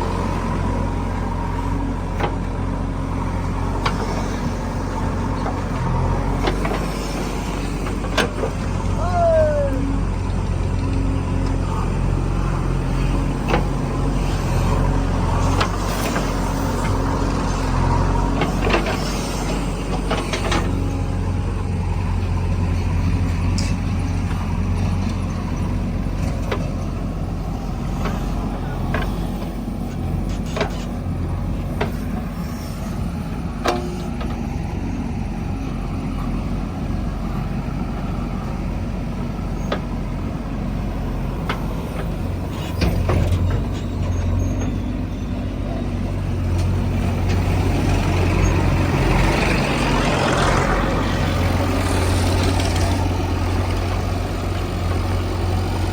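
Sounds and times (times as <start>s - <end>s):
heavy diesel engine running: 0.0s - 55.9s.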